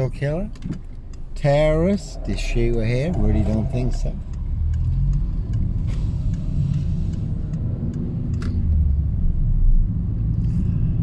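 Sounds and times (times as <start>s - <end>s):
car engine rumble: 0.0s - 11.0s
faint ticks: 0.5s - 8.5s.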